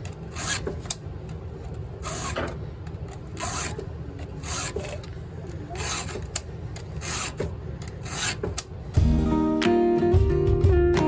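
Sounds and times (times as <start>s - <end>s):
file rasping on chainsaw chain: 0.3s - 0.8s, 2.0s - 2.5s, 3.4s - 3.8s, 4.4s - 5.0s, 5.7s - 6.4s, 7.0s - 8.5s.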